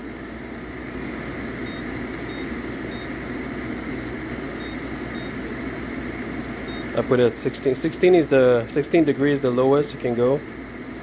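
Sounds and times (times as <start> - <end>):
air conditioner fan hum: 0.0 - 11.0
faint high-pitched tones: 0.8 - 8.6.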